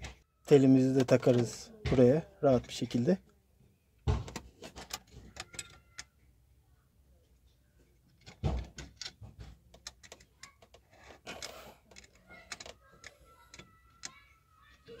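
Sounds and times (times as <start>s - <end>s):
metal parts clicking and knocking: 4.2s - 6.1s, 8.1s - 14.2s.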